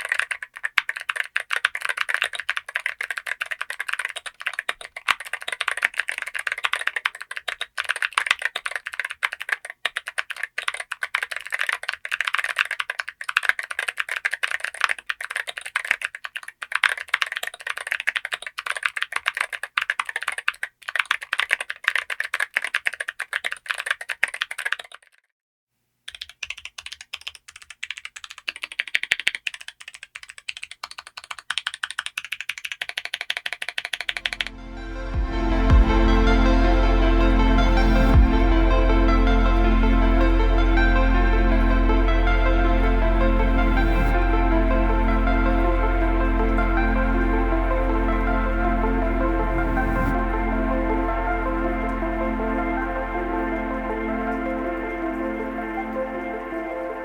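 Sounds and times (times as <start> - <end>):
fast mechanical keyboard typing: 0.0 - 25.3, 26.1 - 34.4.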